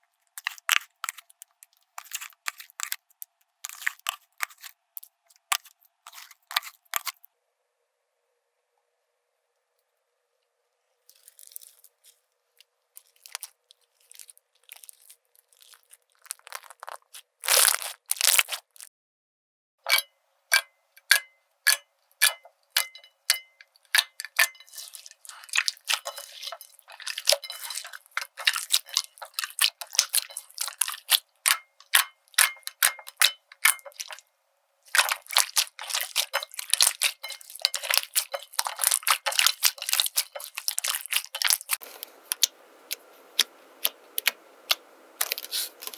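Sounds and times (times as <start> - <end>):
slime popping and crackling: 13.0 - 18.9, 23.9 - 34.2, 34.9 - 45.9.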